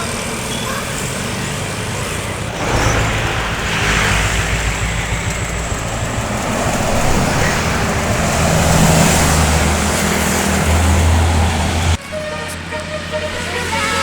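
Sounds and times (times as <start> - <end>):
bus driving past: 0.0 - 14.0.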